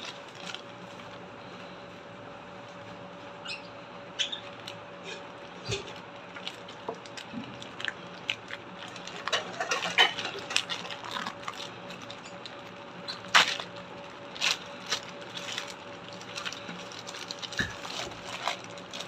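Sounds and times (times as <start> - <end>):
packaging rustling and crinkling: 0.0 - 1.2, 4.4 - 19.0
faint steady hum: 0.0 - 19.0.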